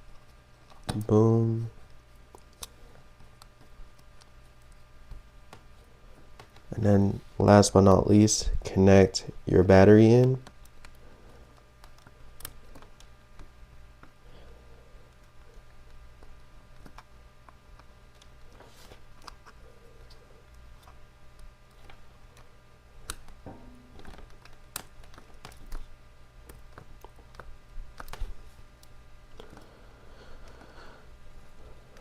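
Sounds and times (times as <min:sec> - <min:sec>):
steady low hum: 0:00.0 - 0:32.0
small clicks and taps of parts: 0:10.2 - 0:14.2, 0:15.1 - 0:29.7.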